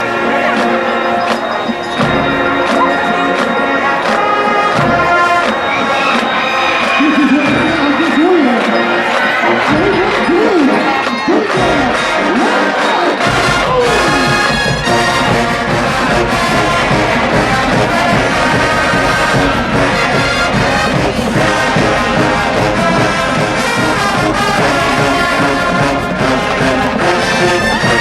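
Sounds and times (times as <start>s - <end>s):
marching band brass: 0.0s - 28.0s
steady drum beat: 9.4s - 12.3s, 13.2s - 28.0s.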